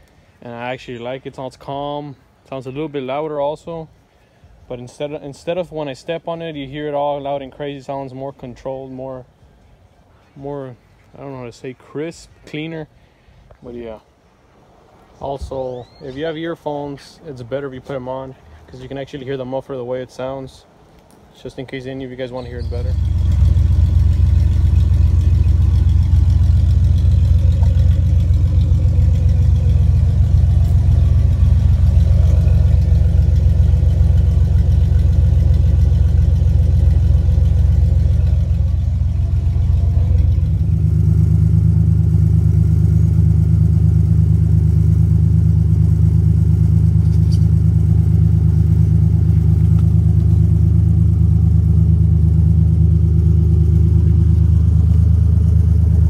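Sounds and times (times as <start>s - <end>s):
pickup truck exhaust running: 22.4s - 56.0s.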